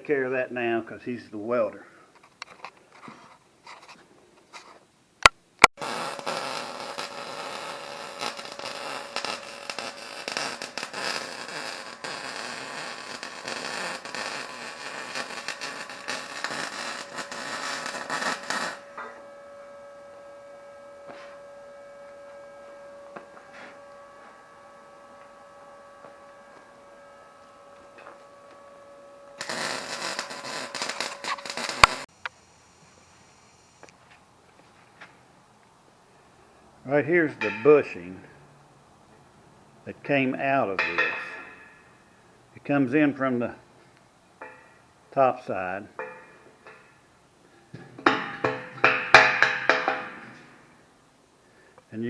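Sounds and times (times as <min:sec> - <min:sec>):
welding arc crackling: 0:05.6 - 0:32.1, 0:48.0 - 0:50.7
electrical hum: 0:05.8 - 0:33.9.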